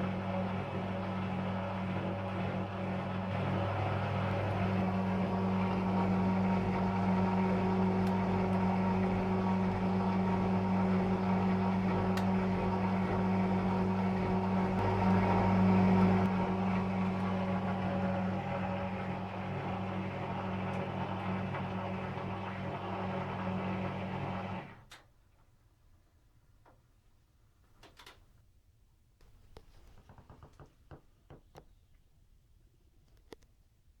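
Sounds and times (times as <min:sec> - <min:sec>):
washing machine spinning: 0:00.0 - 0:24.8.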